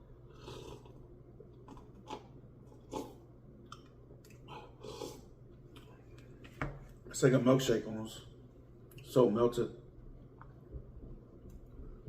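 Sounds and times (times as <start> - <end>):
faint chewing and mouth sounds: 0.2 - 7.1.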